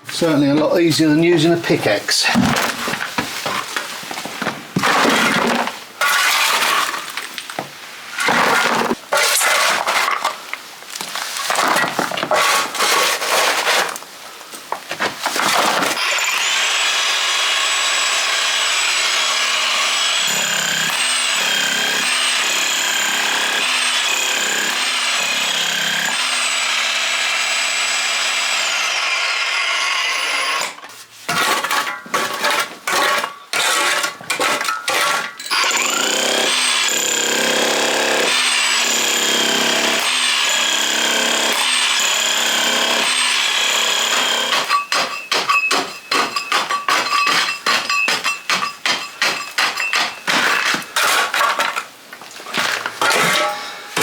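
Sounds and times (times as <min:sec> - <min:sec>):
electric demolition hammer: 0:16.0 - 0:30.8, 0:35.5 - 0:47.1.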